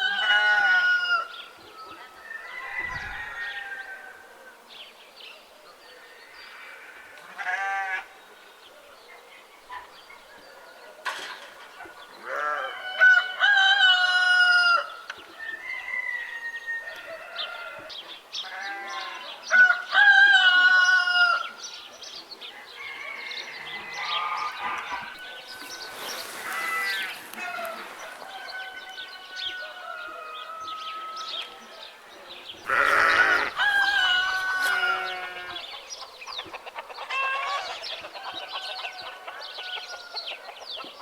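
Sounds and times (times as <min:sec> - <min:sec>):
rooster crowing: 0:00.0 - 0:01.4, 0:02.2 - 0:04.3, 0:12.5 - 0:17.9, 0:22.6 - 0:31.5, 0:32.6 - 0:35.7
fowl calls: 0:22.8 - 0:29.8, 0:32.6 - 0:35.7.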